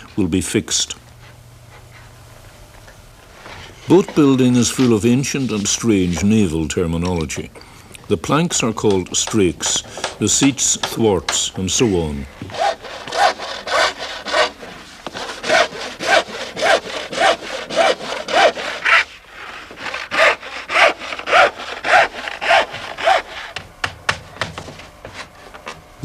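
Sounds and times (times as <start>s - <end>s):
hand saw cutting wood: 3.9s - 6.3s, 12.4s - 23.6s.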